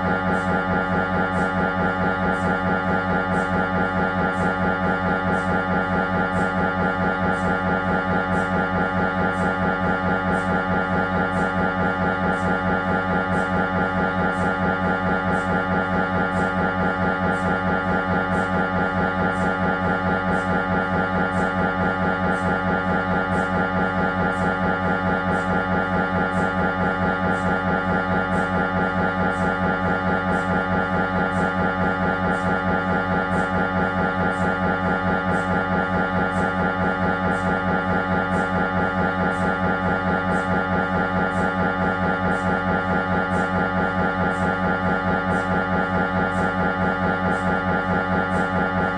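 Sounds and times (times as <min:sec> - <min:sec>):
mri scanner pulsing buzz: 0:00.0 - 0:48.9.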